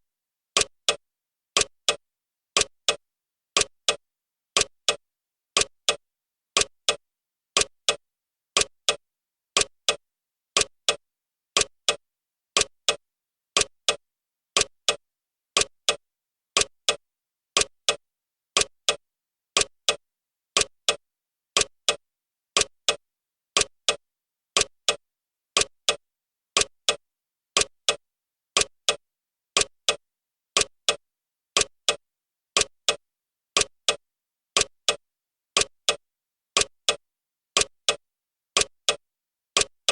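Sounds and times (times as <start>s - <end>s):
clock ticking: 0.6s - 1.0s, 1.6s - 2.0s, 2.6s - 3.0s, 3.6s - 4.0s, 4.6s - 5.0s, 5.6s - 6.0s, 6.6s - 7.0s, 7.6s - 8.0s, 8.6s - 9.0s, 9.6s - 10.0s, 10.6s - 11.0s, 11.6s - 12.0s, 12.6s - 13.0s, 13.6s - 14.0s, 14.6s - 15.0s, 15.6s - 16.0s, 16.6s - 17.0s, 17.6s - 18.0s, 18.6s - 19.0s, 19.6s - 20.0s, 20.6s - 21.0s, 21.6s - 22.0s, 22.6s - 23.0s, 23.6s - 24.0s, 24.6s - 25.0s, 25.6s - 26.0s, 26.6s - 27.0s, 27.6s - 28.0s, 28.6s - 29.0s, 29.6s - 30.0s, 30.6s - 31.0s, 31.6s - 32.0s, 32.6s - 33.0s, 33.6s - 34.0s, 34.6s - 35.0s, 35.6s - 36.0s, 36.6s - 37.0s, 37.6s - 38.0s, 38.6s - 39.0s, 39.6s - 39.9s.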